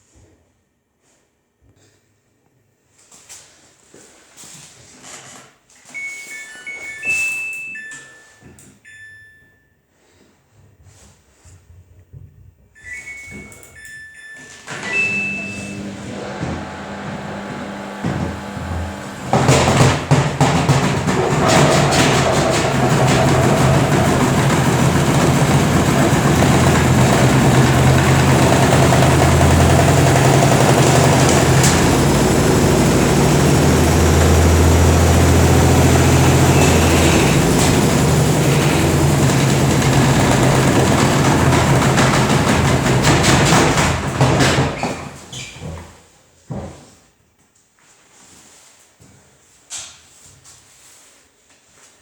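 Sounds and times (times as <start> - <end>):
washing machine low hum: 14.8 - 45.3
washing machine drum banging: 15.0 - 45.3.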